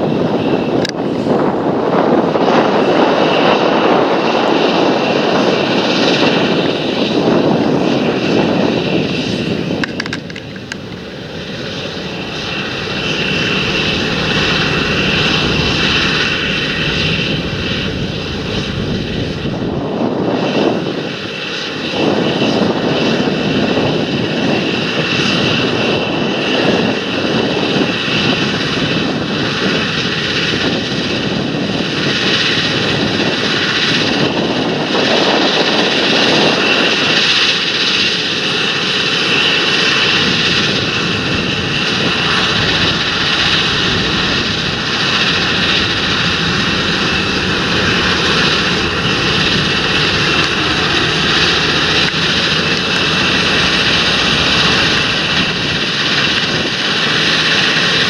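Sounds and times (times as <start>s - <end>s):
tractor diesel engine running: 9.8s - 19.6s, 45.3s - 57.3s.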